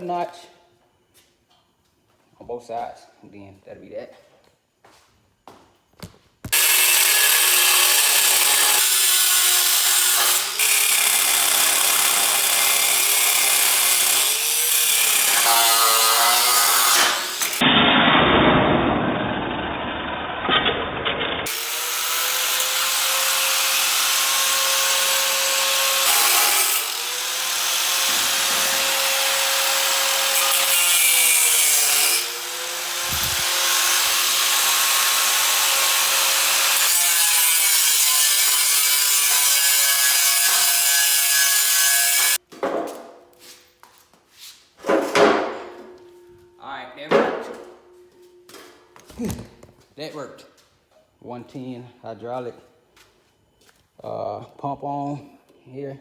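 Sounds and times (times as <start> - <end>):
angle grinder cutting: 6.5 - 17.7, 21.4 - 42.4.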